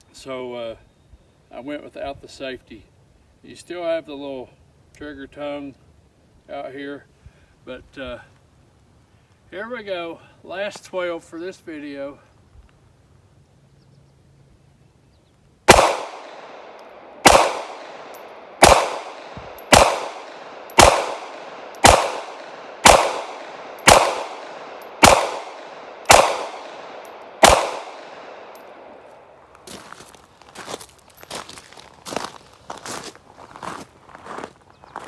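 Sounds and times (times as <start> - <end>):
pistol shots with echo: 15.7 - 29.1.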